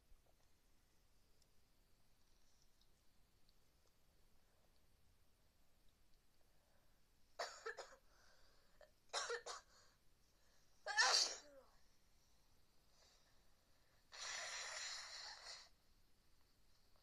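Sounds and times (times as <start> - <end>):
person sneezing: 10.9 - 11.6.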